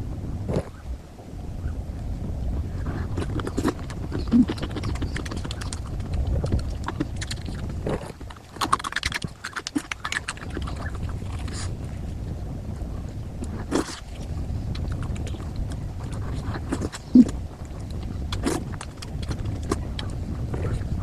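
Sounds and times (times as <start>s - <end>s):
steady low rumble: 0.0s - 21.0s
person chewing and smacking: 3.0s - 11.9s, 13.4s - 21.0s.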